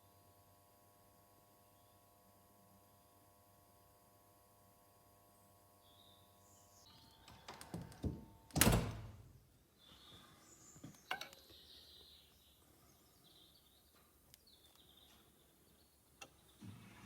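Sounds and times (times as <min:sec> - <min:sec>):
birds chirping faintly: 0:05.3 - 0:08.0, 0:09.6 - 0:17.0.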